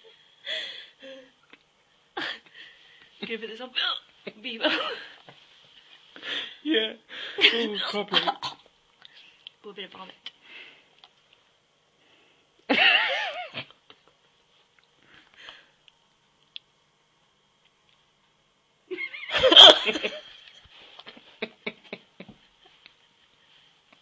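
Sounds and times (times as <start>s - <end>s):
women laughing hard: 12.7s - 13.6s, 18.9s - 20.3s, 21.2s - 22.4s.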